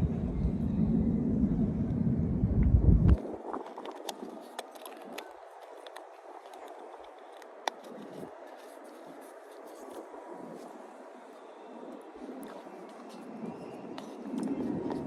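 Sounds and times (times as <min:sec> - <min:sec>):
eating and chewing sounds: 0:03.1 - 0:15.0.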